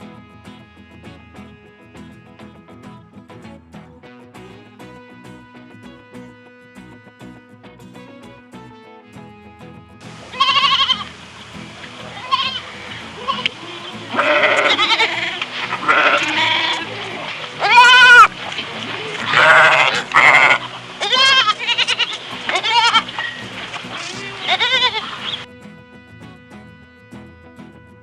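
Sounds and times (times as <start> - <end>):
background music: 0.0 - 28.0
goats or sheep bleating: 10.0 - 28.0.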